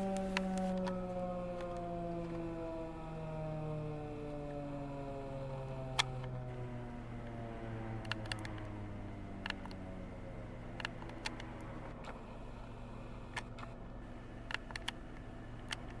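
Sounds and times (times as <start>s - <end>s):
sharp clicks: 0.0s - 1.0s, 6.0s - 6.5s, 7.2s - 12.2s, 13.3s - 16.0s
low steady hum: 0.0s - 16.0s
warning sirens winding down: 0.0s - 16.0s.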